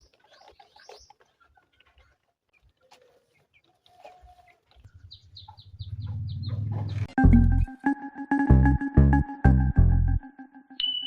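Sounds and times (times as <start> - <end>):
chickens clucking: 0.0 - 7.2
small birds chirping: 0.0 - 7.2.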